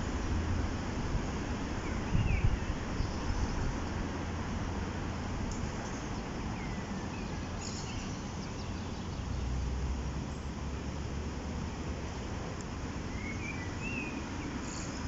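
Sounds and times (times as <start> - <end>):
wind rumbling on microphone: 0.0 - 10.5
faint bird chirps: 6.6 - 9.4.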